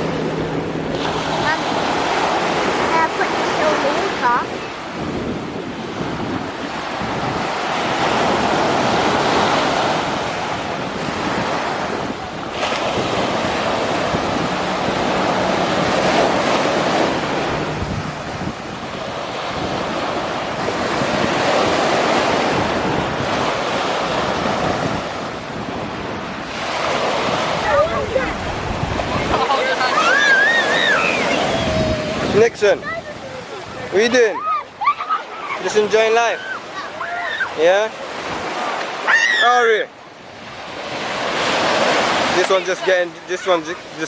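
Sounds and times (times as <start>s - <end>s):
wind buffeting microphone: 0.0s - 35.0s
sea waves on shore: 0.0s - 44.0s.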